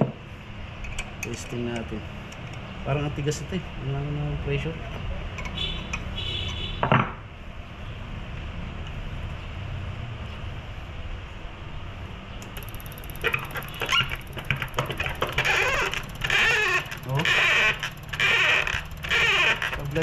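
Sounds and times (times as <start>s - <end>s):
irregular clicks and clacks: 12.4s - 20.0s
low hum: 12.5s - 20.0s
high squealing chatter: 12.6s - 20.0s.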